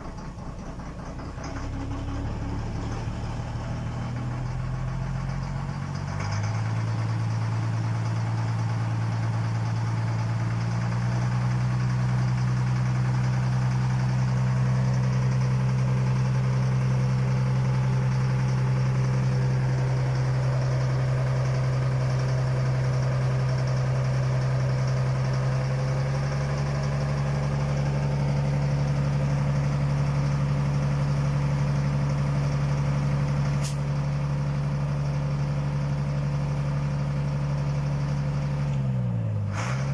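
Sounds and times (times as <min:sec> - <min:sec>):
engine droning: 0:00.0 - 0:39.9
short click: 0:33.6 - 0:33.9.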